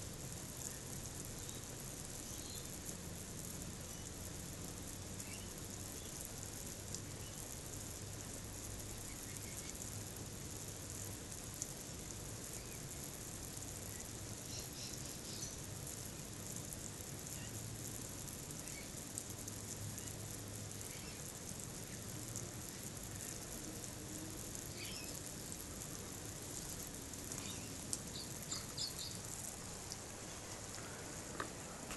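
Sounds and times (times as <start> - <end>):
steady high-pitched hiss: 0.0 - 31.9
bird chirps: 27.4 - 29.2.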